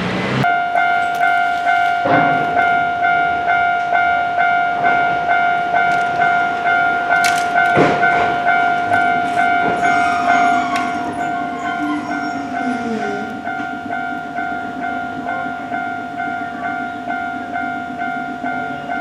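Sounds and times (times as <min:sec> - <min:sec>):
tram noise with gliding whines: 0:00.0 - 0:19.0
electronic crossing bell dinging: 0:00.5 - 0:19.0.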